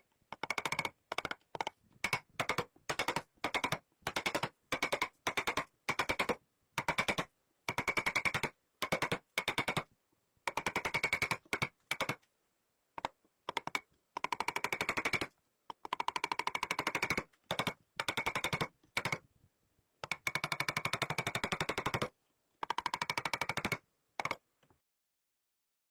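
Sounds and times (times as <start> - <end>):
rapid mechanical clicking: 0.3 - 9.8, 20.0 - 24.4.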